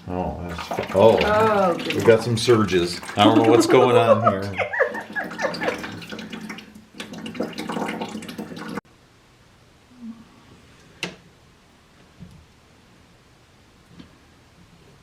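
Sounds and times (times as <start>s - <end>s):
water surging and splashing: 0.4s - 8.8s.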